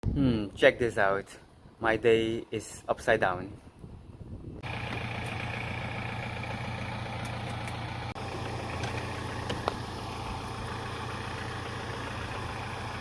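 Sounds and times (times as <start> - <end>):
engine idling: 4.6 - 13.0.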